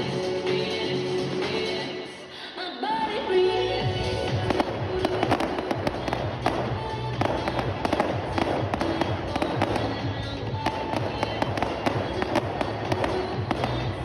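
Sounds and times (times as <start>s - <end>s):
music with pulsing bass: 3.4s - 14.0s
fireworks bangs and crackles: 4.2s - 14.0s.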